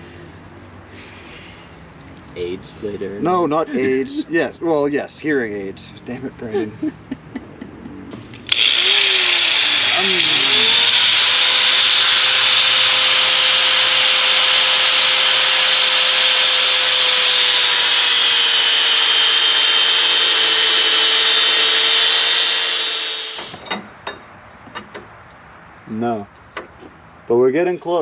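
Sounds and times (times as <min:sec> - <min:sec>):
power tool grinding steel: 0:08.4 - 0:23.6.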